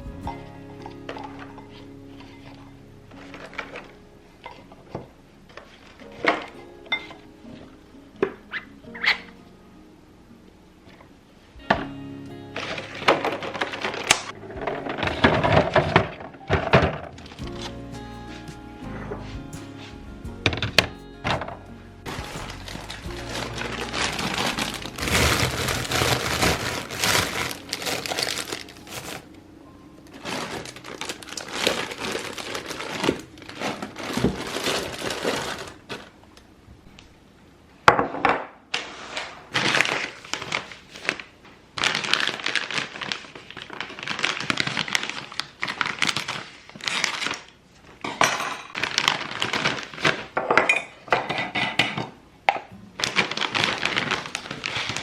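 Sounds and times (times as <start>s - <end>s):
packaging crinkling: 12.6s - 17.8s, 22.0s - 29.4s, 30.1s - 36.5s, 38.8s - 48.0s, 48.6s - 50.4s, 53.0s - 55.0s
kitchen items being handled: 21.3s - 29.4s, 30.0s - 36.2s, 44.8s - 55.0s.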